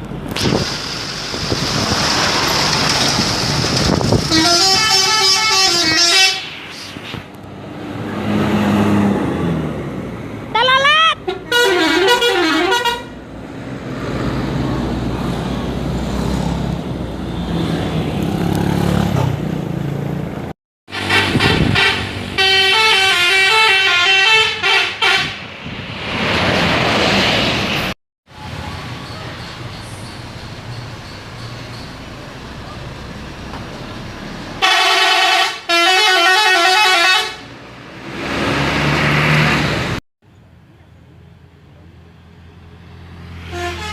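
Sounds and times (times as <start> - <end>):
bus engine and tyres rumbling: 0.0 - 43.9
musical bus horn: 4.3 - 6.5, 10.5 - 13.2, 20.9 - 25.4, 34.6 - 37.5, 43.4 - 43.9.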